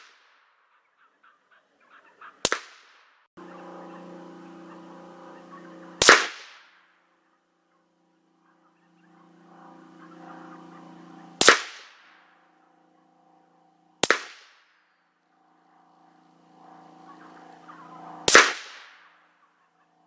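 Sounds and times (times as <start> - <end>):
rifle shots: 2.4 - 3.2, 6.0 - 6.8, 11.4 - 12.3, 14.0 - 14.8, 18.2 - 19.2
faint steady hum: 3.4 - 20.0.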